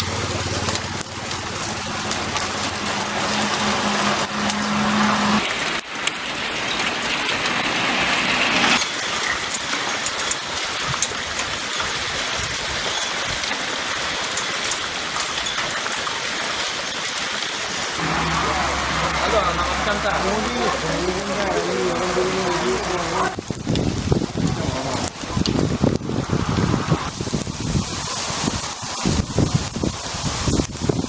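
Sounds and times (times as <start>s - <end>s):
vehicle engine idling: 0.0s - 5.3s
hailstones pelting down: 0.0s - 31.0s.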